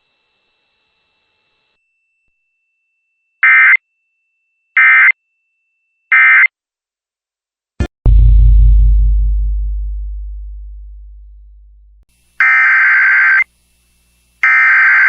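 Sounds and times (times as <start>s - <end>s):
loud deep boom: 8.0s - 12.0s.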